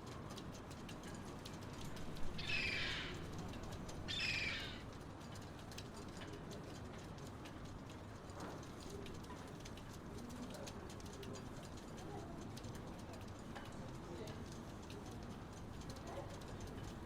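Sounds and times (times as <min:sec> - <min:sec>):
faint ticks: 0:00.0 - 0:17.0
low background wash: 0:00.5 - 0:05.2
bird calling: 0:02.2 - 0:03.3, 0:04.1 - 0:04.9.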